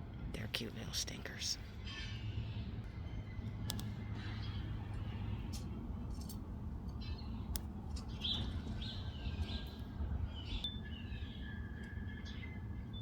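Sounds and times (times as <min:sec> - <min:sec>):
low background rumble: 0:00.0 - 0:13.0
small birds chirping: 0:00.5 - 0:13.0.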